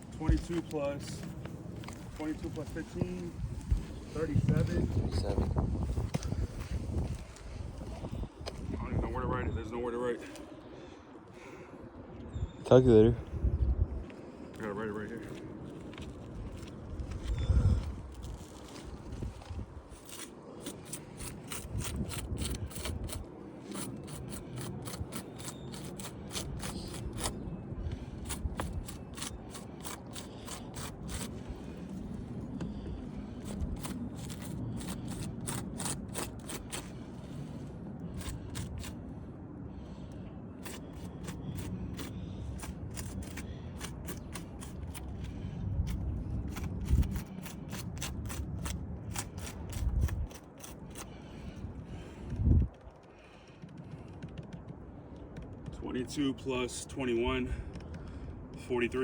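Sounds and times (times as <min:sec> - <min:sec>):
wind rumble on microphone: 0:00.0 - 0:10.0, 0:11.9 - 0:56.6
pen scratching on paper: 0:20.0 - 0:27.4, 0:28.2 - 0:31.5, 0:33.4 - 0:37.0, 0:38.2 - 0:39.0, 0:40.6 - 0:45.4.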